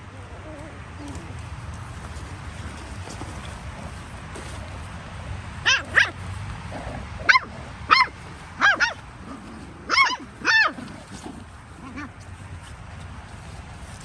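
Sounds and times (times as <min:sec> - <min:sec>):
puppy yappy barks: 0:05.6 - 0:06.2, 0:06.8 - 0:11.2.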